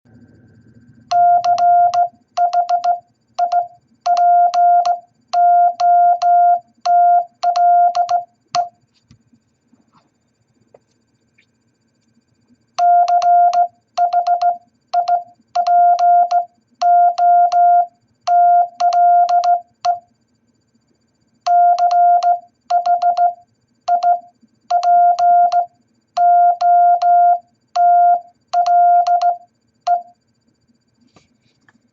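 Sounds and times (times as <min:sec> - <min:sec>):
morse code beeping: 0:01.1 - 0:08.7, 0:12.8 - 0:20.0, 0:21.5 - 0:30.1.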